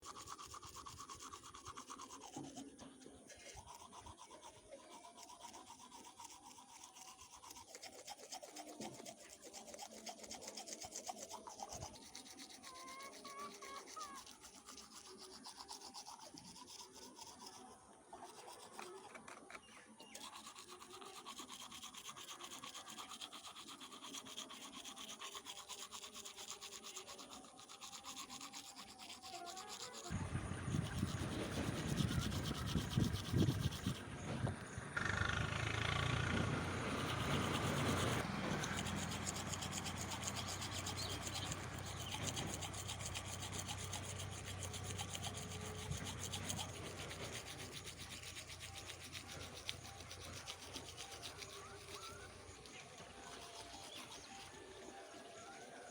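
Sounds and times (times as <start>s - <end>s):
rapid scratchy rattle: 20.0s - 55.1s.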